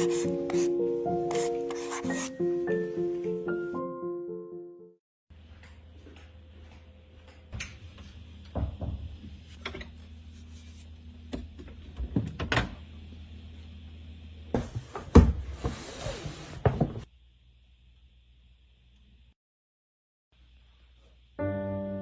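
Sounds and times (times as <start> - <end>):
low room hum: 5.3 - 19.4, 20.4 - 22.0.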